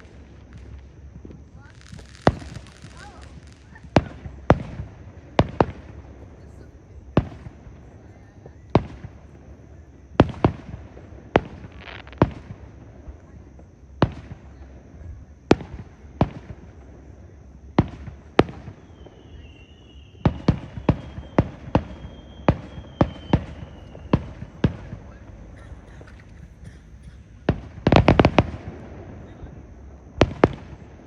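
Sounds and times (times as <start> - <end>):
fireworks bangs: 0.0 - 31.0
faint falling whistle: 18.8 - 24.5.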